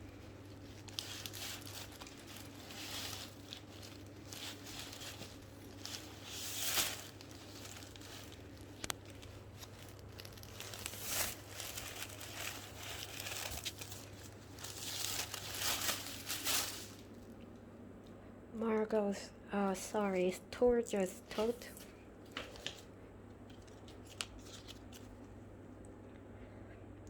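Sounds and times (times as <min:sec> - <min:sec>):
packaging crinkling and rustling: 0:00.0 - 0:17.6, 0:21.4 - 0:25.4.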